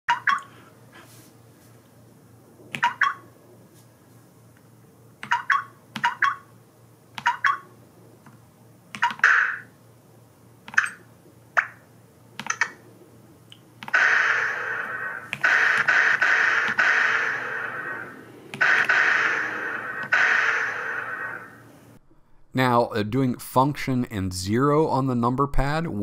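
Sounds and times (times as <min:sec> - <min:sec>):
continuous electronic sound: 0:02.7 - 0:03.3, 0:08.9 - 0:09.7, 0:10.7 - 0:12.8, 0:13.8 - 0:22.0.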